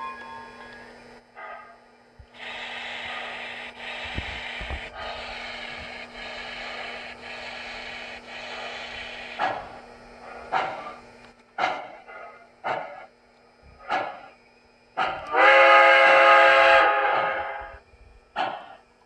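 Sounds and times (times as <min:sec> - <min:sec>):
model locomotive steam hiss: 0:01.4 - 0:11.0, 0:11.6 - 0:13.1, 0:13.8 - 0:14.4, 0:15.0 - 0:18.9.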